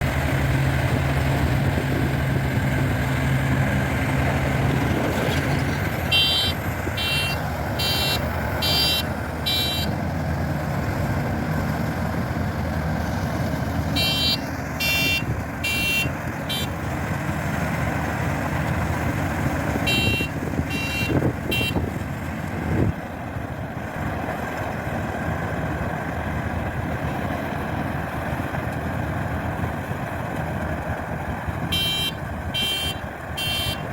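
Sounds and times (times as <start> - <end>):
combine harvester engine running: 0.0 - 33.9
high electronic beeping: 6.1 - 9.9.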